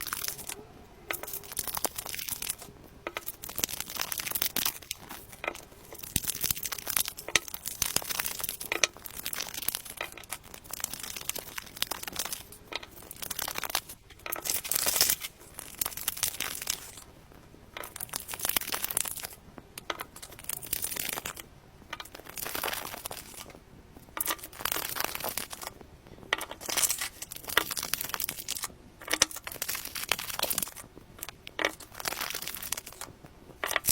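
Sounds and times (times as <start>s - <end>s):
wrappers tearing and crinkling: 0.0s - 17.1s, 17.8s - 21.4s, 22.0s - 23.5s, 24.2s - 33.9s.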